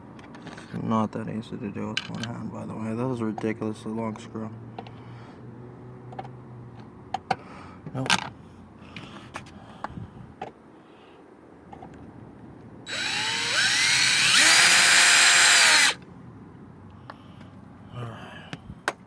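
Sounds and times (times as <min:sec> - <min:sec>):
power drill motor whine: 0:12.9 - 0:16.0.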